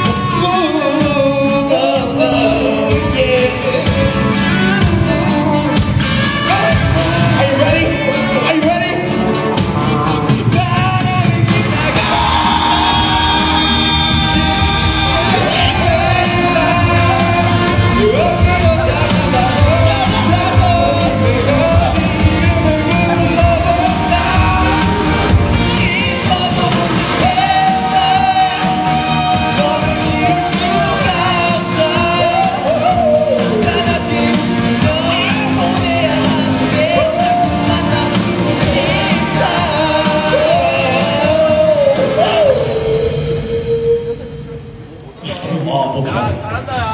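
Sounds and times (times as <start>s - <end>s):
person singing: 0.0s - 45.2s
pop backing music: 0.0s - 46.9s
deep bass: 10.5s - 45.0s.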